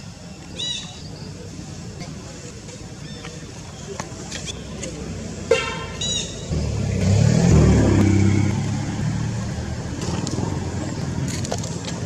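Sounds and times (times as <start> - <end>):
vehicle engine passing by: 6.4 - 11.7.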